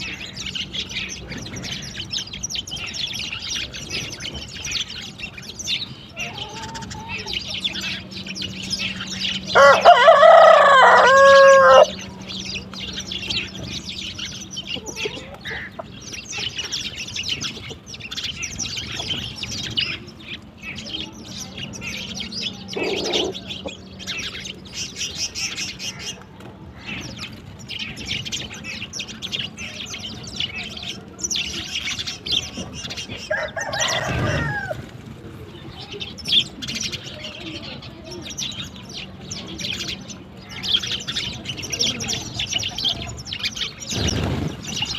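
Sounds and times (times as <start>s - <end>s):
sparrows chirping: 0.0s - 44.9s
rooster crowing: 9.5s - 12.0s, 33.3s - 34.8s
falling fowl call: 9.6s - 12.0s.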